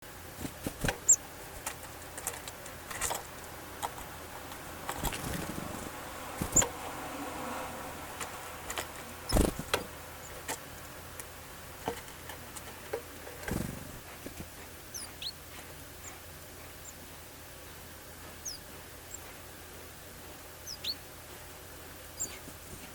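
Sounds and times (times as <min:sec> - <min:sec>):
birds pecking and hopping: 0:00.0 - 0:22.9
songbirds chirping: 0:00.0 - 0:22.9.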